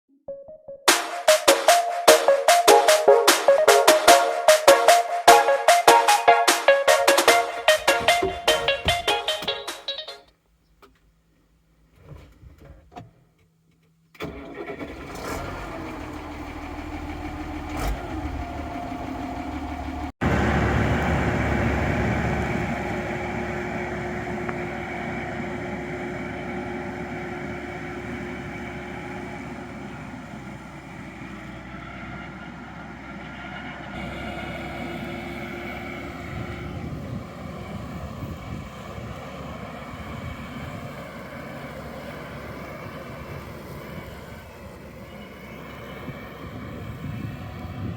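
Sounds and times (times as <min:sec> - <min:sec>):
tractor diesel engine running: 0:06.7 - 0:10.1, 0:14.2 - 0:47.9.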